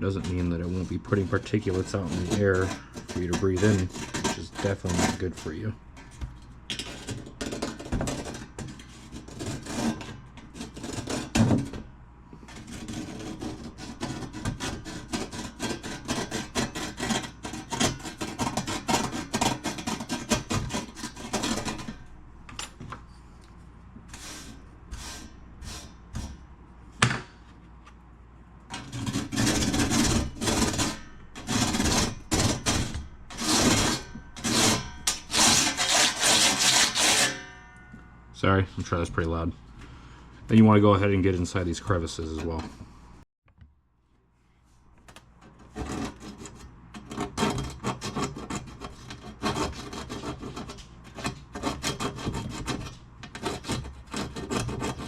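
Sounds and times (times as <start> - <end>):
brush scrubbing metal: 0.0 - 6.1, 28.7 - 37.4, 45.7 - 55.0.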